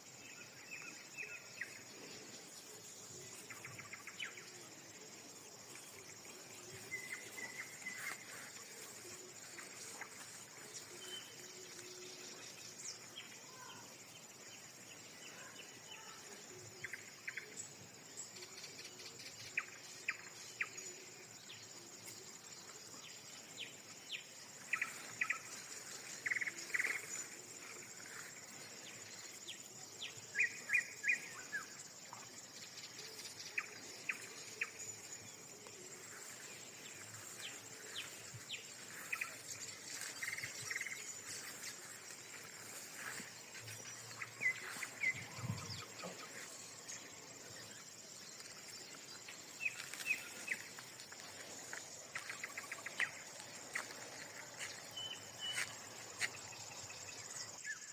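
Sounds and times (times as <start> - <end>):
birds chirping: 23.4 - 57.6.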